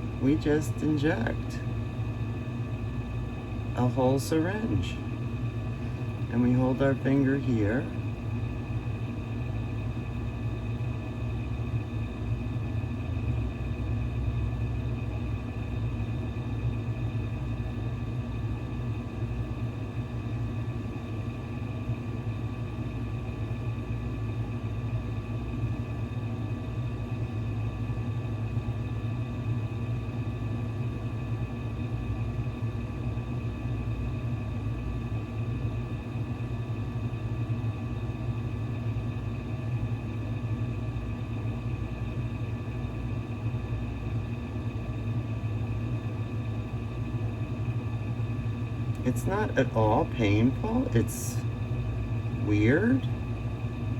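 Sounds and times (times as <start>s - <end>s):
low background hum: 0.0s - 53.9s.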